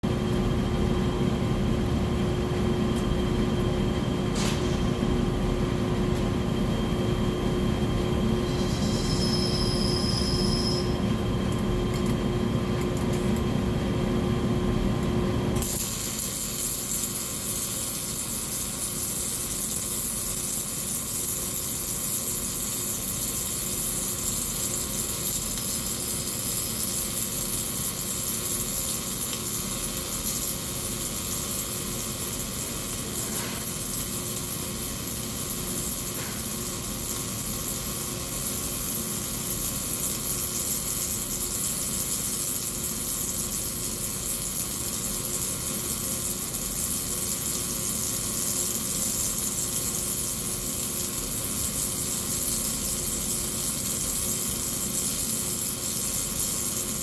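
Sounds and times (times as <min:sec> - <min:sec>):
welding arc hissing: 0:04.2 - 0:05.5, 0:08.3 - 0:11.0, 0:15.6 - 0:57.0.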